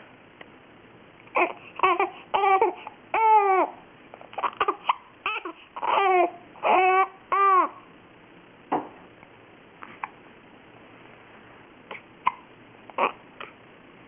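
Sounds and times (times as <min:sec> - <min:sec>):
baby fussing with short cries: 0:01.3 - 0:03.7, 0:04.3 - 0:07.8.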